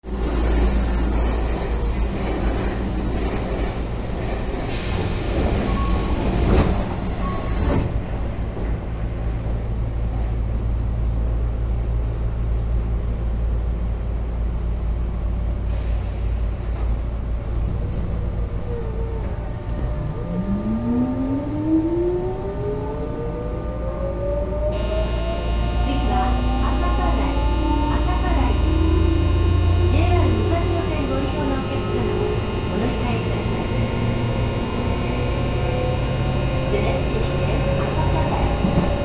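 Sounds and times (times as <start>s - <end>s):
train equipment hum: 0.0s - 39.0s
rising motor whine: 18.4s - 39.0s.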